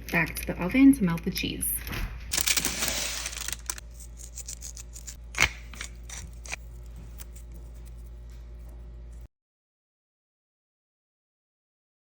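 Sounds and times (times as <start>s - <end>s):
steady low hum: 2.2s - 9.3s.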